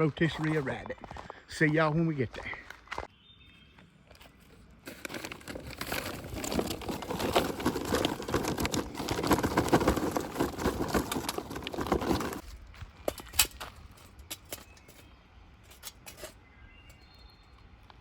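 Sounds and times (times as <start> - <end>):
dense crackling and rustling: 4.8 - 12.6.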